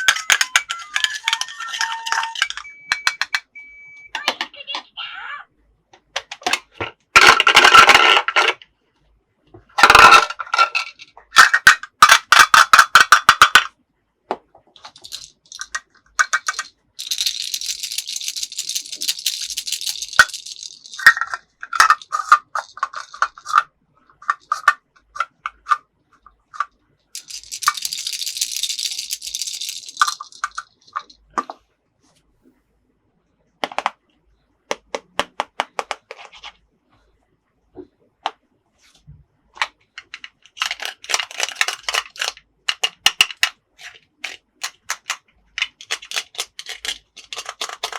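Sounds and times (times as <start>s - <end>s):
plastic toy pieces clicking: 0.0s - 4.8s, 6.2s - 8.6s, 9.8s - 13.7s, 14.8s - 25.8s, 26.5s - 31.4s, 39.6s - 47.9s.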